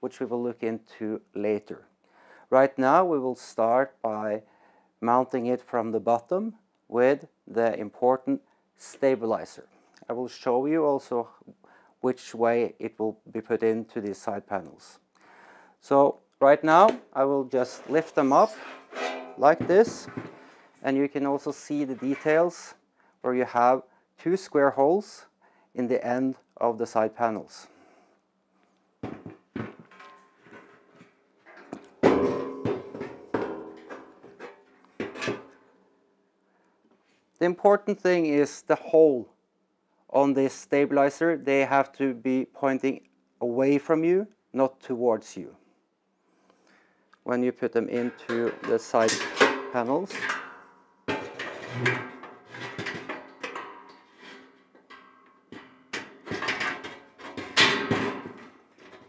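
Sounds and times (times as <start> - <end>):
sheet metal parts clanking: 17.5 - 20.8, 21.8 - 22.6, 29.0 - 35.6, 47.9 - 59.0
wooden panels knocking together: 29.0 - 30.7, 31.7 - 35.5.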